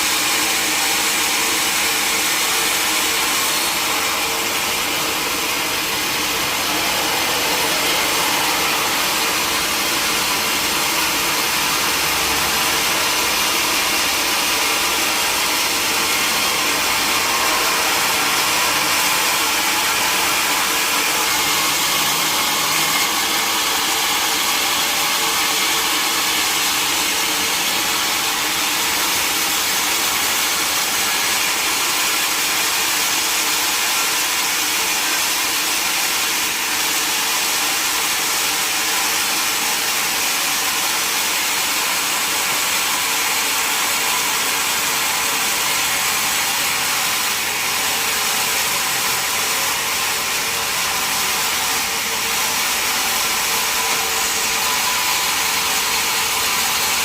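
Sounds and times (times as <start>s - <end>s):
sawmill saw whirring: 0.0s - 57.0s.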